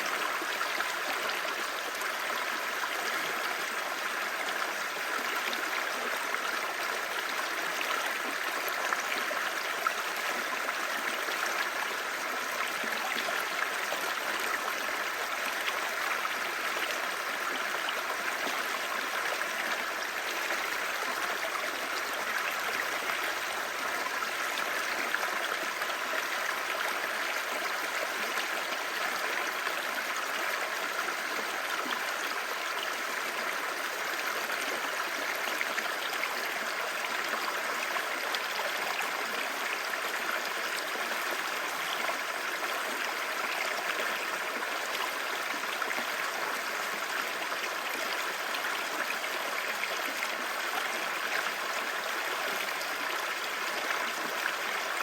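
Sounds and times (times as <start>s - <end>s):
stream babbling: 0.0s - 55.0s.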